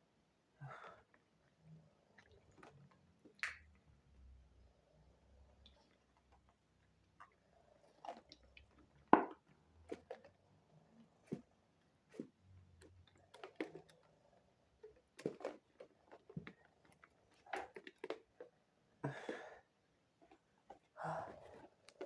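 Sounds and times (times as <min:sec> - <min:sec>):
breath out: 0:21.0 - 0:21.8.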